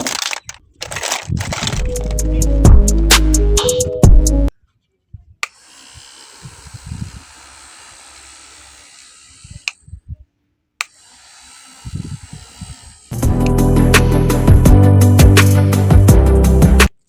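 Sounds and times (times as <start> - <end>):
electric fan whirring: 10.8 - 13.9.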